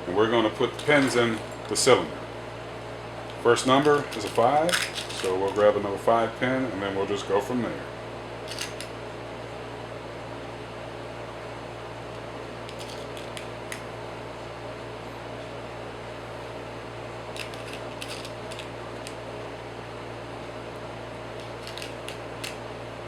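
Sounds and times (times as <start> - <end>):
mechanical fan hum: 0.0 - 23.0
lock pins clicking: 3.8 - 5.6, 8.5 - 8.9, 17.4 - 19.2, 21.4 - 22.6.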